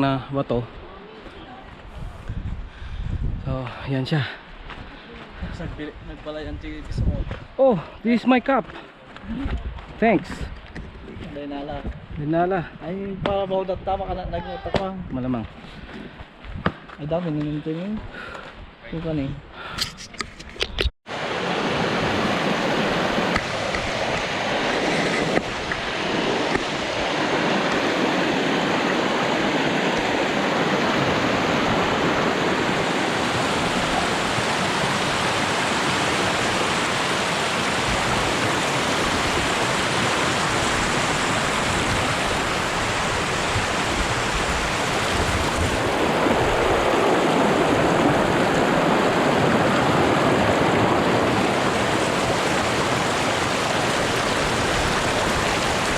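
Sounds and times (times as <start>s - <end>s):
rushing flowing water: 21.1s - 55.9s.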